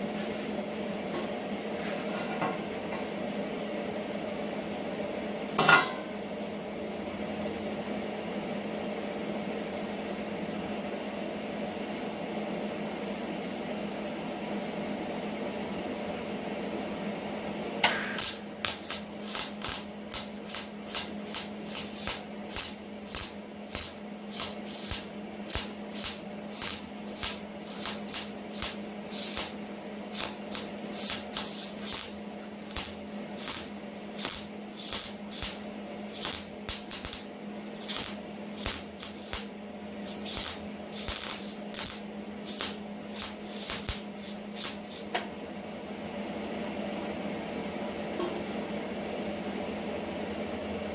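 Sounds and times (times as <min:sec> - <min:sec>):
electrical hum: 0:00.0 - 0:50.9
welding arc crackling: 0:17.8 - 0:45.2.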